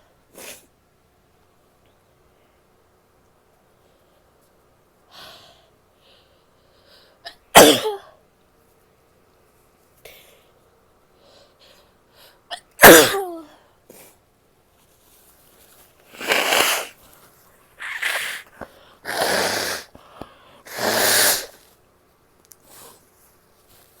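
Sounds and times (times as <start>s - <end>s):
woman sneezing: 7.6s - 8.1s, 12.5s - 13.5s, 16.2s - 17.0s, 17.8s - 18.5s, 20.7s - 21.6s
breathy bursts of air: 16.1s - 17.0s, 17.8s - 21.6s.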